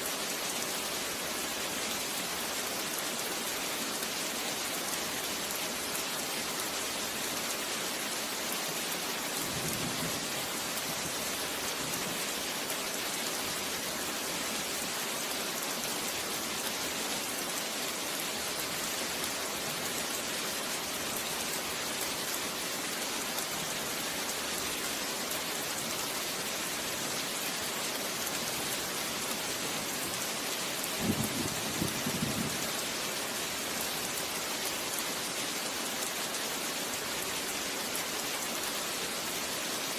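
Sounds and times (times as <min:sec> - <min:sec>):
dense rainfall: 0:00.0 - 0:39.9.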